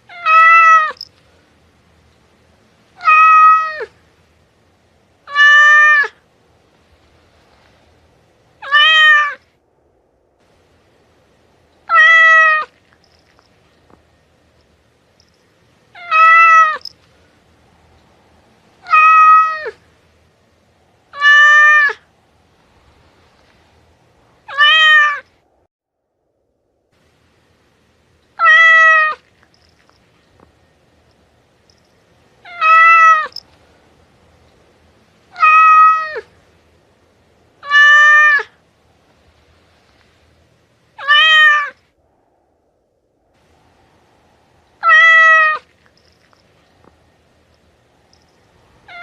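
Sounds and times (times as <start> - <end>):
cat meowing: 0.1 - 1.1, 3.0 - 3.9, 5.2 - 6.2, 8.6 - 9.4, 11.8 - 12.8, 15.9 - 16.9, 18.8 - 19.8, 21.1 - 22.0, 24.5 - 25.3, 28.4 - 29.3, 32.4 - 33.4, 35.3 - 36.3, 37.6 - 38.6, 41.0 - 41.8, 44.8 - 45.7.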